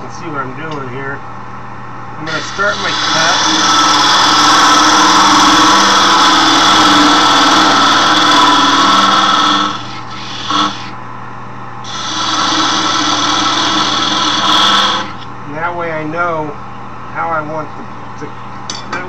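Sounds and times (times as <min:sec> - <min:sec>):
lathe motor hum: 0:02.2 - 0:11.0, 0:11.8 - 0:15.3
lathe tool scraping wood: 0:02.3 - 0:11.0, 0:11.8 - 0:15.3.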